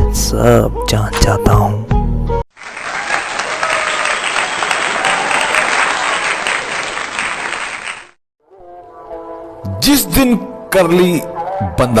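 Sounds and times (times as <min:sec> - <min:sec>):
audience applause: 0:02.6 - 0:08.2.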